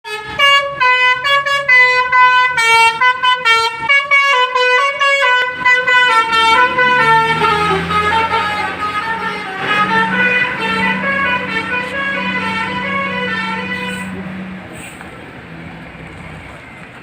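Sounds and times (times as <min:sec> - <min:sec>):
musical bus horn tune: 0:00.1 - 0:14.5.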